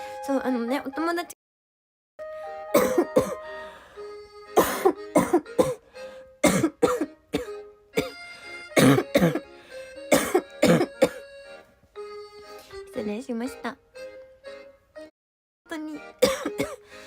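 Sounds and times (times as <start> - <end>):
background music: 0.0 - 1.4, 2.2 - 15.1, 15.7 - 17.0
woman coughing: 2.7 - 3.4, 4.6 - 5.8, 6.4 - 8.2, 8.8 - 9.4, 10.1 - 11.2, 16.2 - 16.8.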